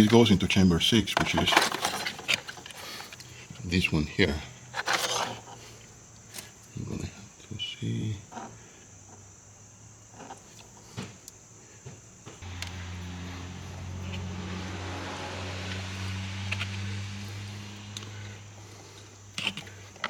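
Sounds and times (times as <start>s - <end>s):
low mechanical hum: 1.2s - 20.0s
small clicks: 12.4s - 13.1s.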